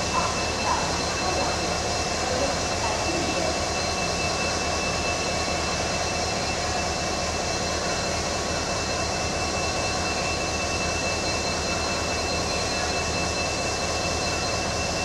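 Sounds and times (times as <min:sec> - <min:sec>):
high whine: 0:00.0 - 0:15.0
locomotive engine idling: 0:00.0 - 0:15.0.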